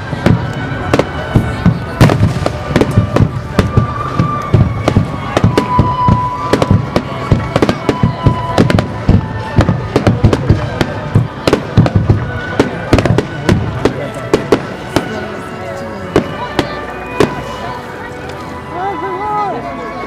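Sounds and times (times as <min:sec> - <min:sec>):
firework bangs: 0:00.0 - 0:15.4, 0:16.1 - 0:17.6.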